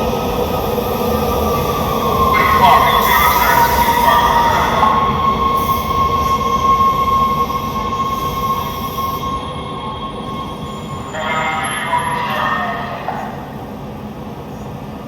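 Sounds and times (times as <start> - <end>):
train rumbling on rails: 0.0 - 15.0
high wheel squeal: 3.2 - 12.0.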